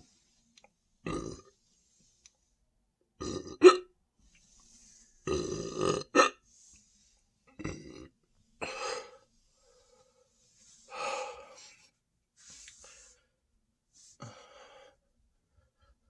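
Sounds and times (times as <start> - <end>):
man burping: 1.1 - 1.5, 3.2 - 3.9, 5.3 - 6.4, 7.6 - 8.8.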